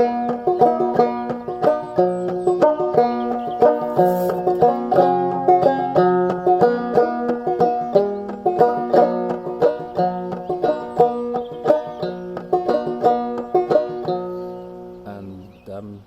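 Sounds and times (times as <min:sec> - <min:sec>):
banjo played clawhammer style: 0:00.0 - 0:15.3.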